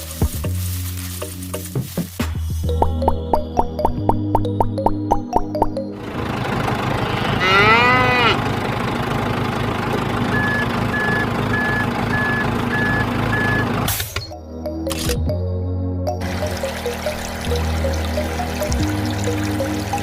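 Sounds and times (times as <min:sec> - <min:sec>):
truck engine running: 0:04.9 - 0:14.2
cow mooing: 0:07.0 - 0:08.5
reversing alarm beeping: 0:10.3 - 0:13.7.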